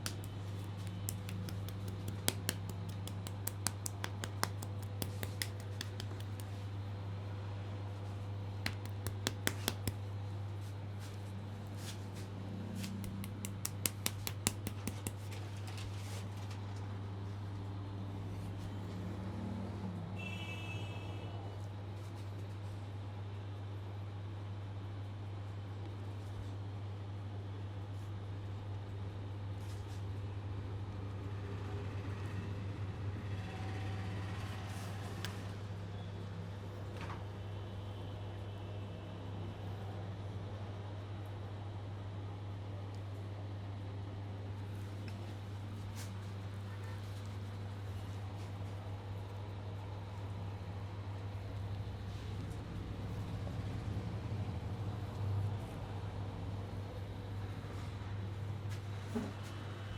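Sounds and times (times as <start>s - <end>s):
sharp clicking taps: 0.0s - 6.6s, 8.7s - 10.0s, 12.8s - 15.2s.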